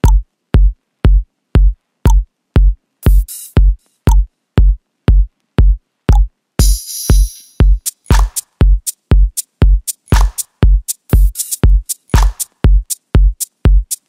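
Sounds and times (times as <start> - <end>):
drum machine kick: 0.0 - 14.0.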